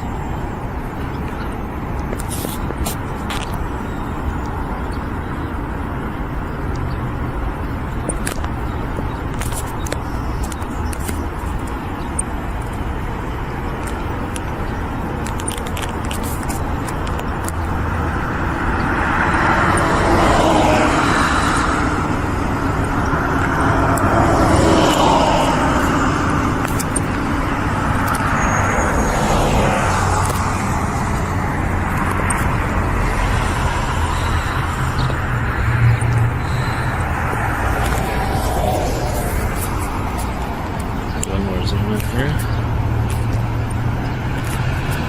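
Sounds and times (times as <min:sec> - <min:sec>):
road traffic passing: 0:00.0 - 0:45.0.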